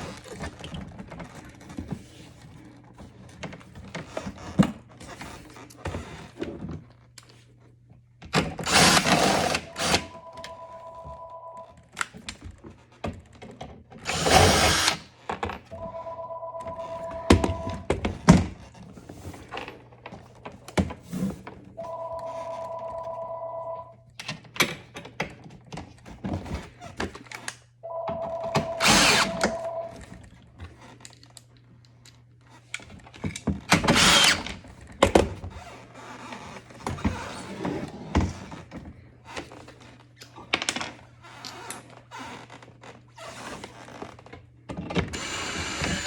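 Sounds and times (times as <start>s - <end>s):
electronic two-tone ring: 9.2s - 11.7s, 15.8s - 17.9s, 21.8s - 23.9s, 27.9s - 30.0s.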